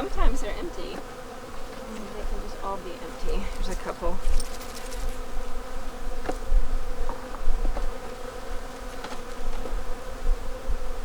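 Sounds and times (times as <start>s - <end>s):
honeybees buzzing: 0.0s - 11.0s.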